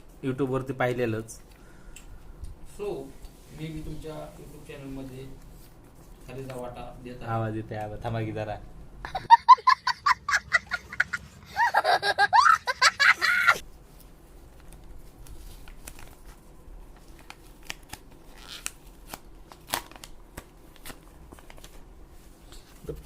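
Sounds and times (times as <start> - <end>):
crinkling paper: 13.7 - 23.0
paper packet being torn open: 17.1 - 21.8.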